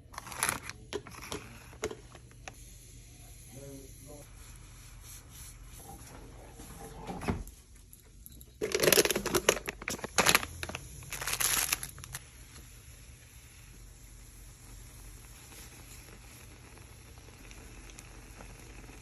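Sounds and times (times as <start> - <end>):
plastic packaging crinkling: 0.1 - 2.4, 8.6 - 12.2.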